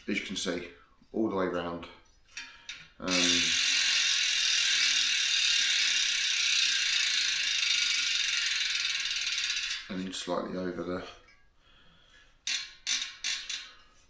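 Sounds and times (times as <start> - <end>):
bicycle hub fast clicking: 3.1 - 9.9, 12.4 - 13.8.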